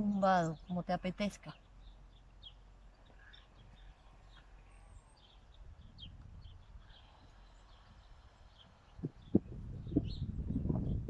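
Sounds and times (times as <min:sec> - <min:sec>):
faint bird chirps: 0:01.5 - 0:10.3.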